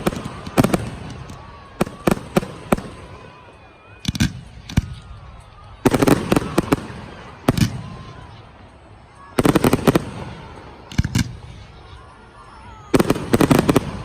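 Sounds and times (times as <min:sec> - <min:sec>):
fireworks bangs: 0:00.0 - 0:08.4, 0:09.2 - 0:12.0, 0:12.8 - 0:14.0.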